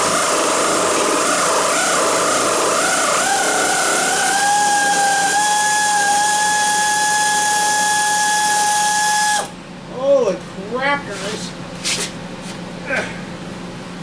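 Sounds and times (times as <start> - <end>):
power drill running: 0.0 - 9.5.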